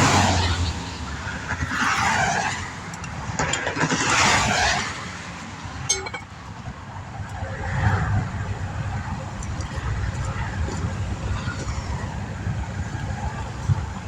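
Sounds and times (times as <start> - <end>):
low traffic rumble: 0.0 - 14.0
sharp metallic clink: 5.9 - 6.3.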